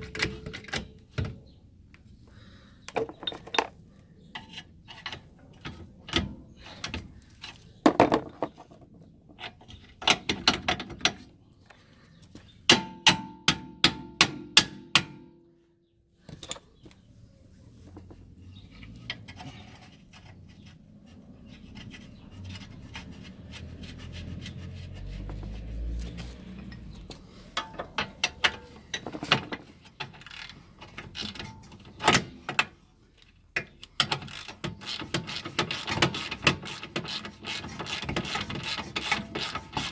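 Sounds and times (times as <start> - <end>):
hand tools clicking on metal: 33.6 - 39.9.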